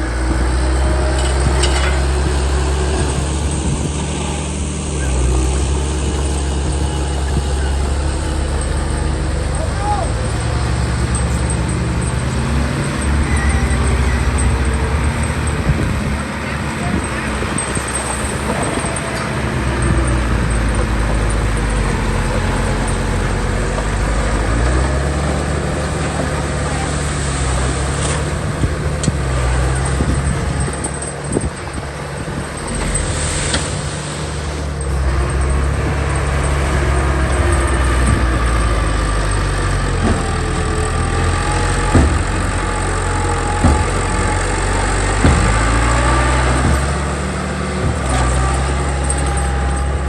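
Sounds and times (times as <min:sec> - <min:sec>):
heavy machine engine rumbling: 0:00.0 - 0:50.0
short knocks: 0:39.4 - 0:49.8.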